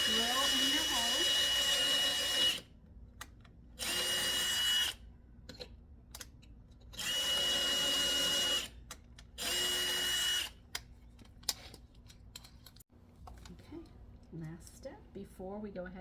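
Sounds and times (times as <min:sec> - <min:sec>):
power drill whining: 0:00.0 - 0:02.7, 0:03.8 - 0:05.0, 0:07.0 - 0:08.8, 0:09.4 - 0:10.6.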